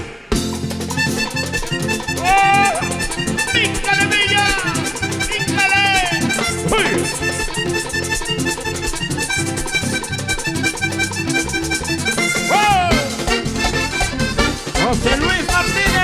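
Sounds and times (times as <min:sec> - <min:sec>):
accordion: 0:00.0 - 0:16.0
band playing: 0:00.0 - 0:16.0
whooping calls: 0:02.2 - 0:07.4.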